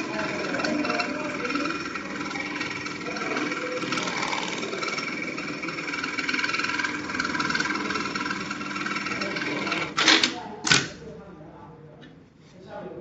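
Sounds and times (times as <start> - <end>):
sewing machine stitching clatter: 0.0 - 10.9.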